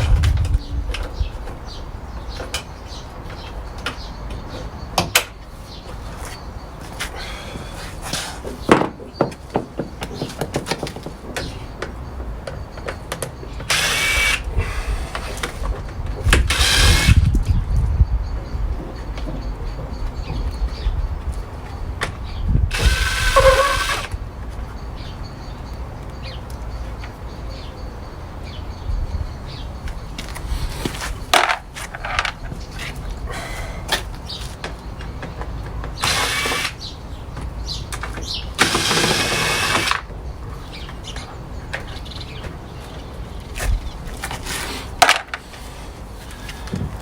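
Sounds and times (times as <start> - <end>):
loud grinding rattle: 13.7 - 15.6, 16.3 - 17.3, 22.7 - 24.2, 36.0 - 36.9, 38.6 - 40.1.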